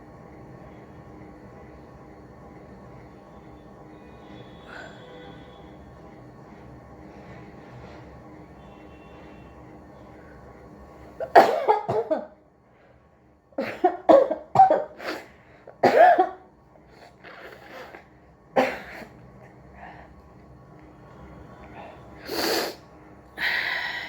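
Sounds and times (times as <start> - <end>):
person coughing: 11.2 - 12.4, 13.6 - 16.5, 18.6 - 19.2.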